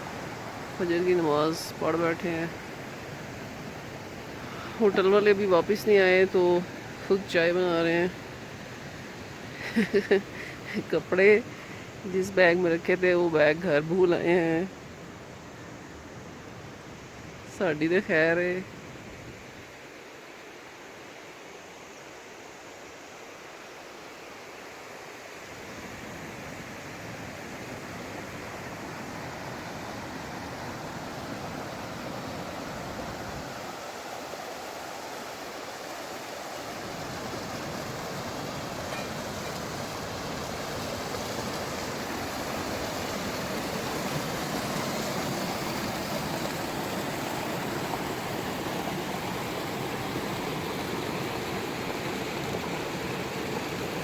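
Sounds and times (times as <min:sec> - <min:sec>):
fast-flowing stream rushing: 0:00.0 - 0:10.8, 0:24.9 - 0:54.0.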